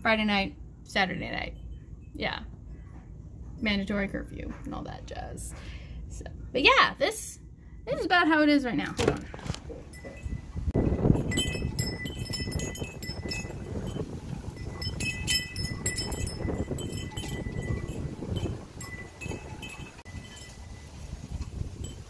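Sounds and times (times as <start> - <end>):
strong wind gusting: 10.1 - 22.0
light metallic clinks: 11.1 - 20.8.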